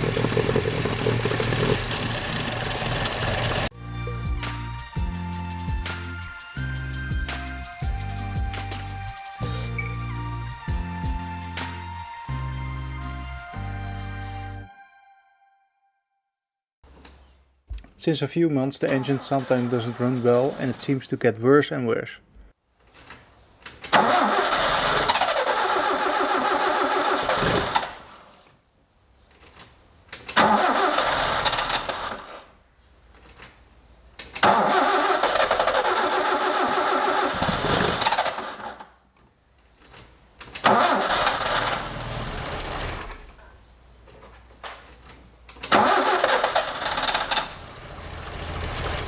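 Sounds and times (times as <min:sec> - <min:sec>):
car engine starting: 0:00.0 - 0:03.7, 0:18.9 - 0:21.0, 0:23.9 - 0:28.3, 0:30.3 - 0:32.5, 0:34.3 - 0:38.9, 0:40.4 - 0:43.5, 0:45.5 - 0:49.0.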